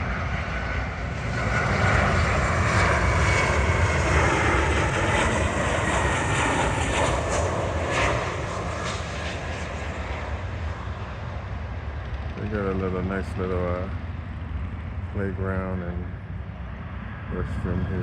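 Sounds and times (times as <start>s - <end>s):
jet engines rushing: 0.0s - 18.0s.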